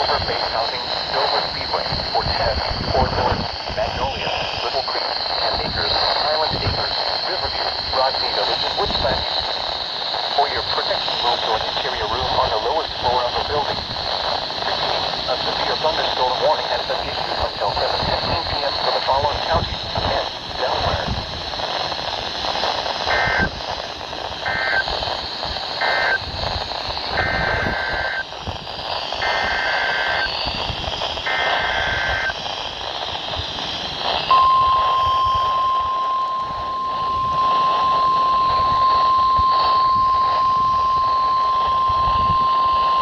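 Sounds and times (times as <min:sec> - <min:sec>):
radio static: 0:00.0 - 0:43.0
steady warning tone: 0:00.0 - 0:43.0
raspy digital data squawks: 0:23.1 - 0:23.6, 0:24.3 - 0:32.6.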